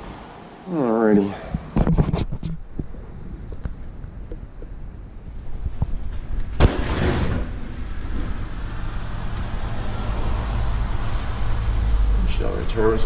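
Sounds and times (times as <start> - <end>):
sharp bang: 6.6 - 8.4.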